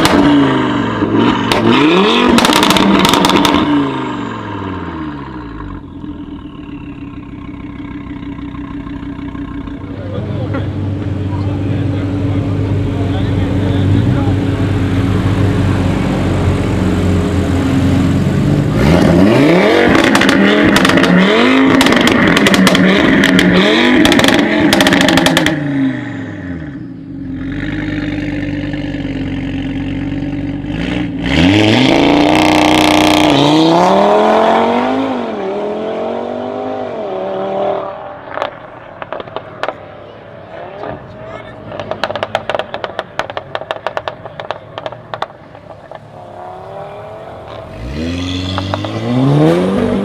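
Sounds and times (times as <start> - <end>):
car engine revving: 0.0 - 50.0
exhaust crackles and pops: 2.3 - 3.7, 18.7 - 25.7, 38.2 - 50.0.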